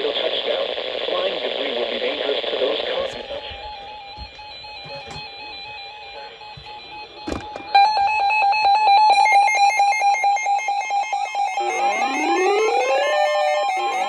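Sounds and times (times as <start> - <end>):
rapid electronic beeping: 2.9 - 14.0
rising siren-like tone: 7.2 - 14.0.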